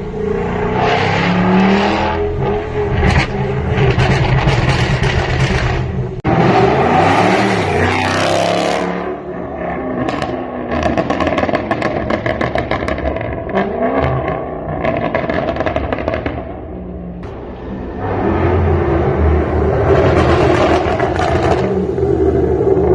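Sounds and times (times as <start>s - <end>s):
exhaust pops and crackles: 3.0s - 6.2s, 10.1s - 16.6s, 20.0s - 21.8s
car engine accelerating: 17.1s - 22.9s.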